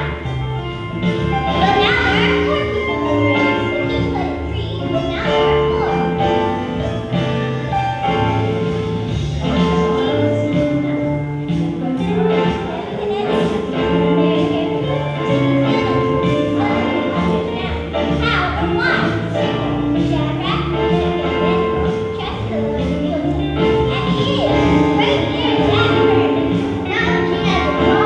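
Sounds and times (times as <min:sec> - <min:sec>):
instrumental accompaniment: 0:00.0 - 0:28.0
children's choir singing: 0:12.1 - 0:28.0.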